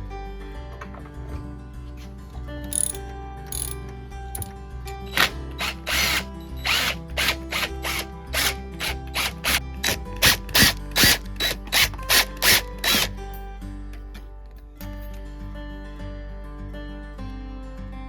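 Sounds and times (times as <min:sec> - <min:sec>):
background music: 0:00.0 - 0:18.0
tool working a fastener: 0:02.7 - 0:03.8, 0:05.1 - 0:13.2.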